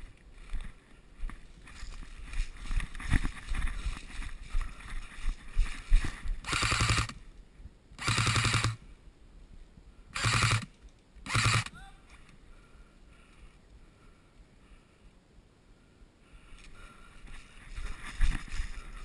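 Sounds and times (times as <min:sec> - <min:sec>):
rustling: 0:00.0 - 0:07.0, 0:16.5 - 0:19.0
airsoft gun full-auto firing: 0:06.4 - 0:07.2, 0:08.0 - 0:08.8, 0:10.2 - 0:11.7.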